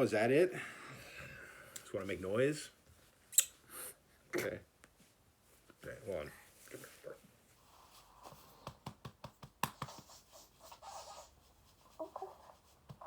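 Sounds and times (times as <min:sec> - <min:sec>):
soft scratching and rustling: 0:04.9 - 0:13.0.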